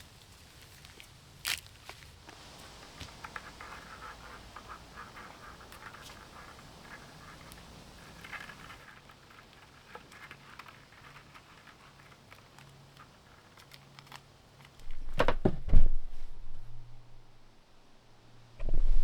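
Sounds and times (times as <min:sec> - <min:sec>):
light clicks and taps: 0:00.3 - 0:15.0.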